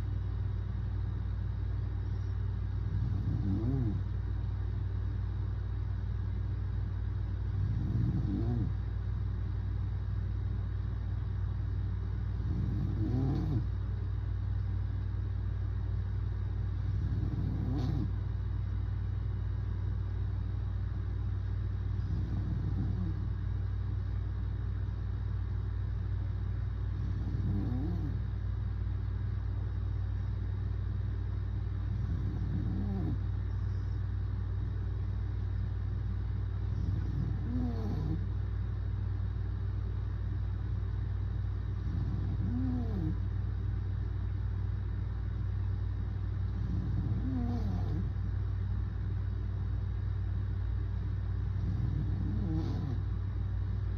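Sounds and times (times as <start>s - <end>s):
steady low hum: 0.0s - 53.9s
man snoring: 2.9s - 4.0s, 7.6s - 8.8s, 12.4s - 13.7s, 16.9s - 18.1s, 22.0s - 23.2s, 27.0s - 28.2s, 32.0s - 33.2s, 36.7s - 38.3s, 41.8s - 43.2s, 46.6s - 48.1s, 51.6s - 53.0s.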